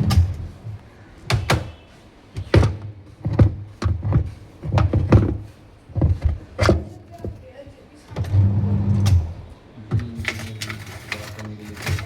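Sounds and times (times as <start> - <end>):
hard knocks and thunks: 2.4 - 6.9.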